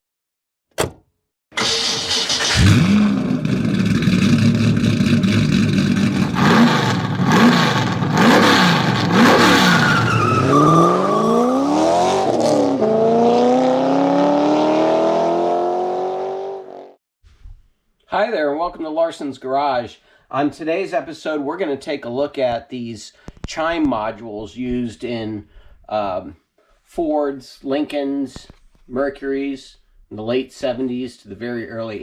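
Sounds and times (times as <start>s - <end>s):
car engine revving: 1.6s - 16.9s.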